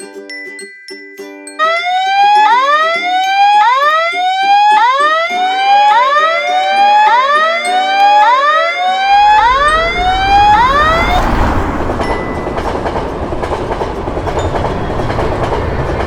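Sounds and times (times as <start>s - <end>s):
level crossing warning alarm whooping: 1.6s - 16.0s
low pulsing tone: 8.9s - 13.5s
train rumble: 8.9s - 16.0s.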